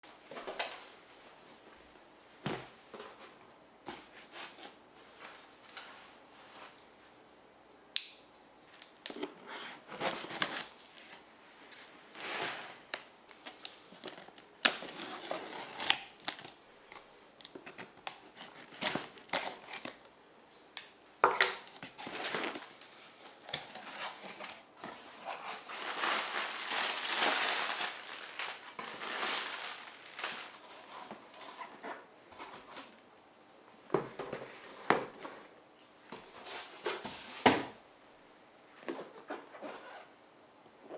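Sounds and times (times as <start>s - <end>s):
packaging rustling and crinkling: 8.8s - 20.1s, 21.6s - 33.0s.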